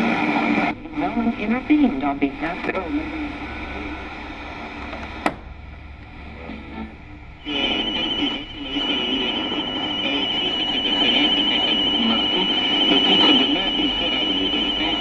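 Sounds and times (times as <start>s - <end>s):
radio static: 0.0s - 5.3s, 6.2s - 15.0s
garbled broadcast voice: 7.4s - 15.0s
high-pitched whistle: 7.4s - 15.0s.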